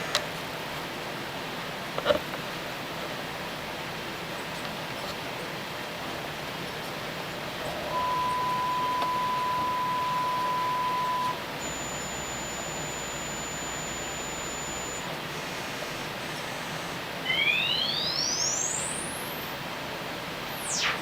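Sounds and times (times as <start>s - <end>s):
faint low hum: 7.6s - 15.0s
sine test tone: 7.7s - 15.1s, 16.6s - 19.6s
faint high tone: 7.8s - 15.0s.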